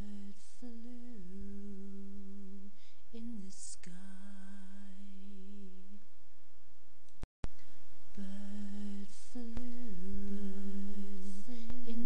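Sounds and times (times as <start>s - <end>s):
person humming a slow tune: 0.0s - 5.8s, 8.1s - 12.0s
person breathing: 2.7s - 3.1s, 10.8s - 11.9s.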